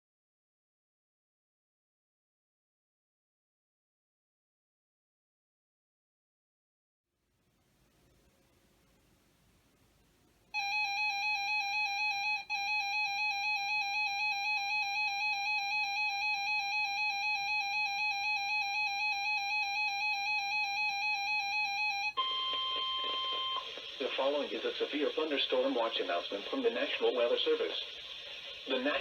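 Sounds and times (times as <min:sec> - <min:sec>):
steady warning tone: 0:10.5 - 0:29.0
radio hiss: 0:22.2 - 0:29.0.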